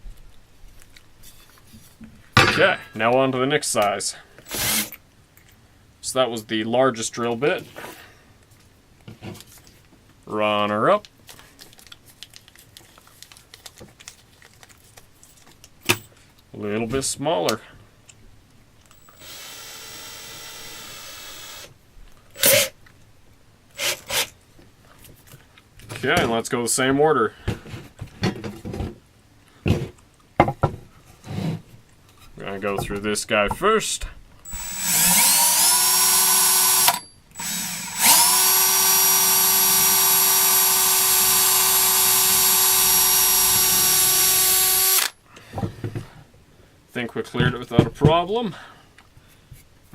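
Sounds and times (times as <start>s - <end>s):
power drill whining: 4.4s - 5.0s, 18.9s - 21.7s, 34.4s - 45.2s.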